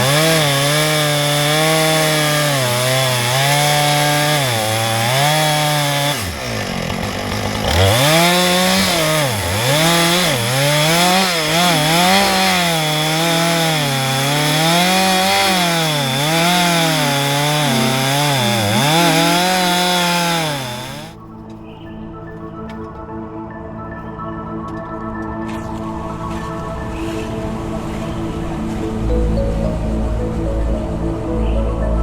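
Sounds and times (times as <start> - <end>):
chainsaw cutting through log: 0.0 - 21.2.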